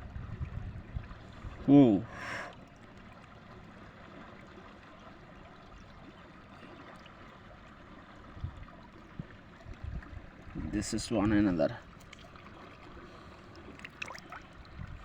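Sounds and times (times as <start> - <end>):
river water running: 0.0 - 15.0.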